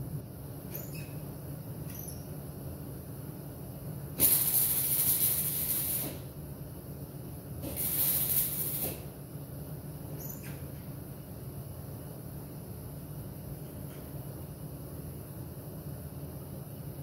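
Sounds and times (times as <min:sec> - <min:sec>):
steady low hum: 0:00.0 - 0:17.0
welder crackling hiss: 0:04.2 - 0:06.3, 0:07.6 - 0:09.1.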